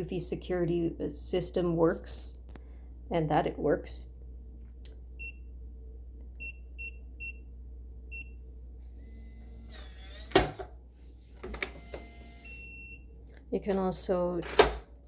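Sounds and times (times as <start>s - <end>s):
lock motor whirring: 8.9s - 12.6s.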